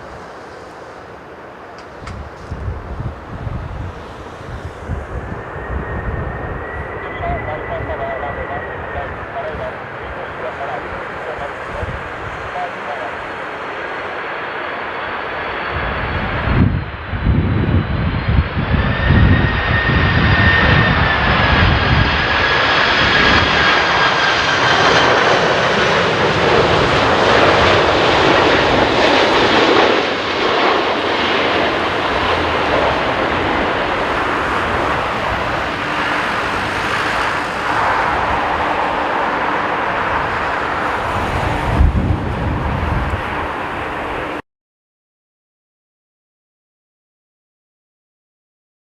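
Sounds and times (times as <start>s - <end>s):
jet engines roaring: 0.0s - 44.4s
wind buffeting microphone: 1.8s - 12.7s, 15.7s - 23.7s, 26.4s - 44.4s.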